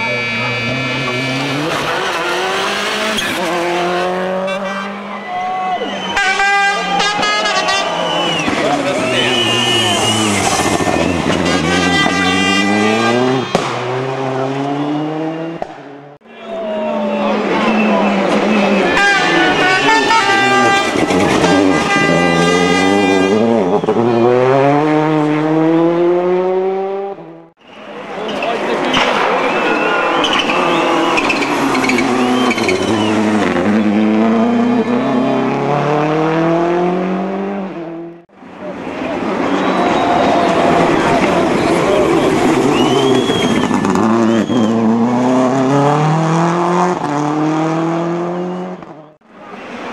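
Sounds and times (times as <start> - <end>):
rally car accelerating hard: 0.0 - 5.1, 7.9 - 27.5, 28.6 - 49.9
tyre squeal: 7.2 - 13.6, 27.6 - 35.4, 39.0 - 45.0.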